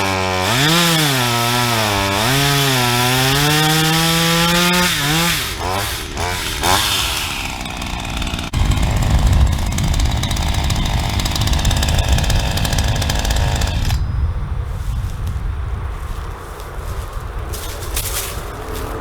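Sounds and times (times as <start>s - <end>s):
chainsaw engine slowing to idle: 0.0s - 14.2s.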